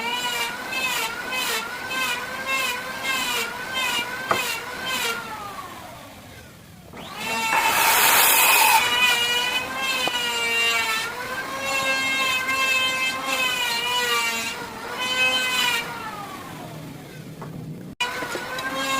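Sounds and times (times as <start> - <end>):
tool cutting into wood: 7.0 - 16.0
power tool motor whining: 7.0 - 16.8.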